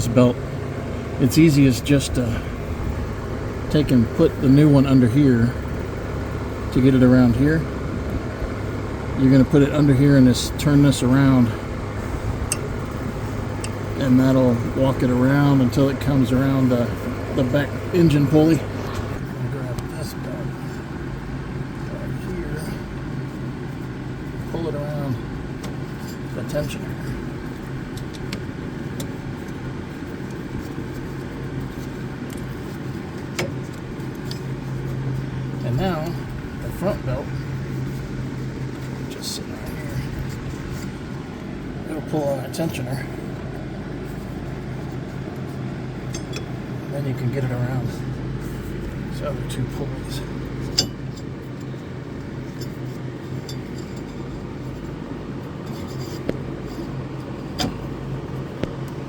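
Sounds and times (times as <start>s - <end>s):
low mechanical hum: 0.0s - 59.0s
light clicks and taps on pulley: 12.5s - 16.1s, 27.4s - 36.8s.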